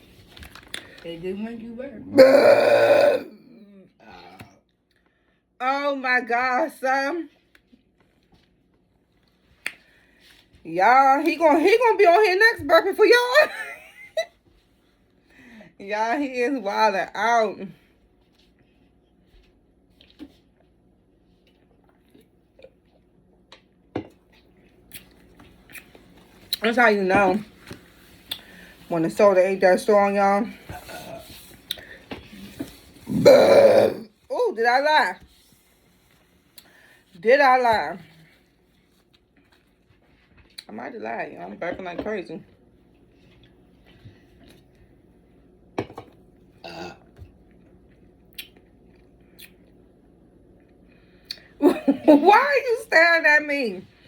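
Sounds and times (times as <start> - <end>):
woman burping: 2.1 - 3.8, 33.1 - 34.1, 46.6 - 47.1.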